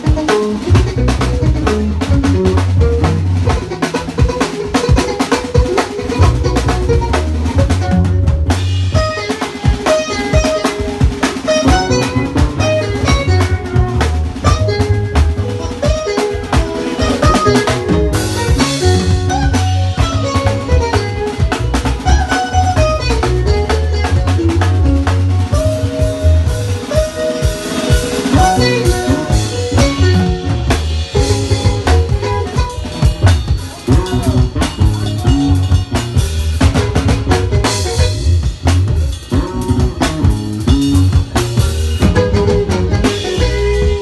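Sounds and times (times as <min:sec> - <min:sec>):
bass: 0:00.0 - 0:44.0
drum kit: 0:00.0 - 0:44.0
guitar: 0:00.0 - 0:44.0.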